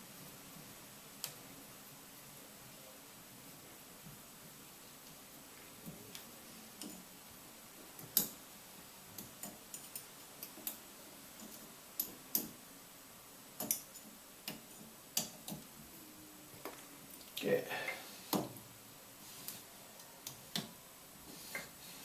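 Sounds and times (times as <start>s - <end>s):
hard parts clicking and tapping: 13.6s - 15.7s.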